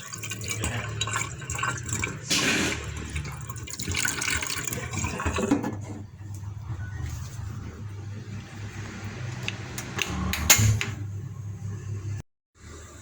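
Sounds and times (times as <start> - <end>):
water splashing and trickling: 0.0 - 5.6
water pouring: 0.0 - 6.0.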